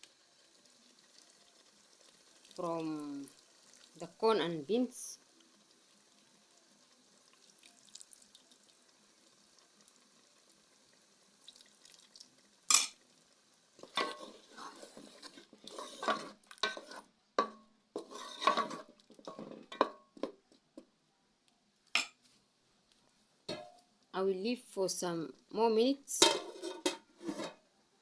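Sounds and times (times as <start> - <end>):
spoon scraping a pot: 13.8 - 20.0, 26.2 - 27.6.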